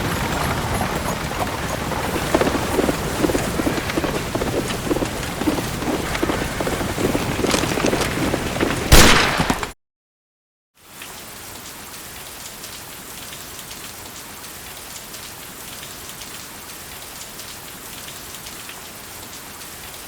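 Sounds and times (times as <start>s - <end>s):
heavy rain: 0.0s - 9.7s, 10.9s - 20.0s
thunderclap: 0.0s - 9.8s.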